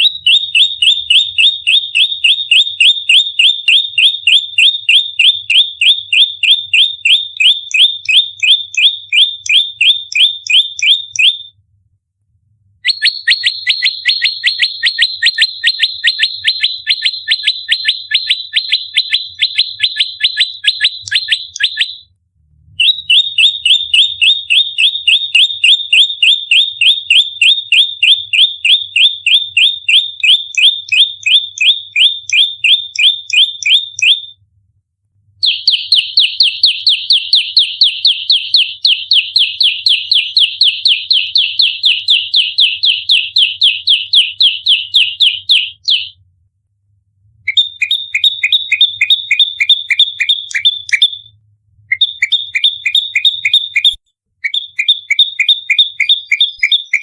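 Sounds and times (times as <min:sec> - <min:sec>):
bird rapid sharp chips: 0:12.9 - 0:22.0, 0:51.9 - 0:57.0.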